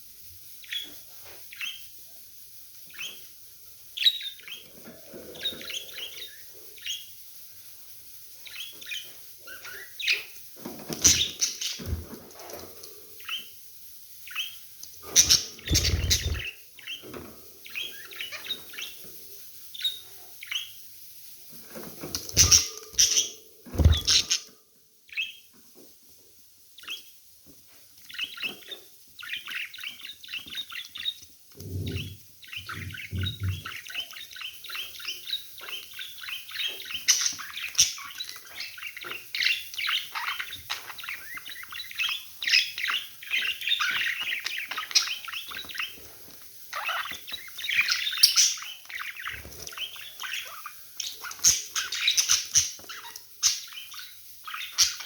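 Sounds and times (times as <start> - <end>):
budgerigars chirping: 0.6 - 1.9, 2.9 - 3.3, 8.4 - 12.6, 14.3 - 19.1, 22.1 - 24.5, 28.1 - 46.1, 46.7 - 55.0.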